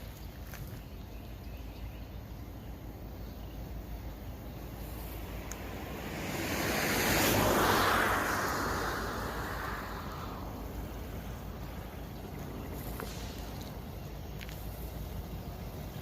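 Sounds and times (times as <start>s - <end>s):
vehicle passing by: 4.7s - 13.8s.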